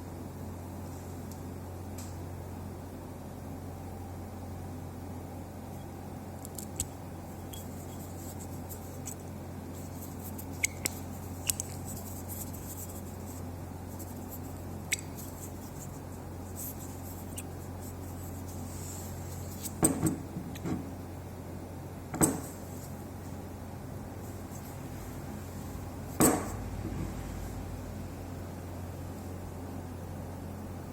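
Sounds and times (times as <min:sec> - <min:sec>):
steady low hum: 0:00.0 - 0:30.9
small metal part clicking: 0:10.6 - 0:11.8.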